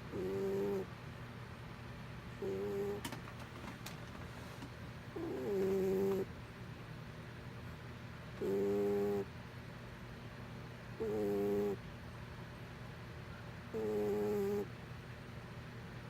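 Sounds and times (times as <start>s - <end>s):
cat snoring: 0.1s - 0.9s, 2.4s - 3.0s, 5.2s - 6.3s, 8.4s - 9.3s, 11.0s - 11.8s, 13.7s - 14.7s.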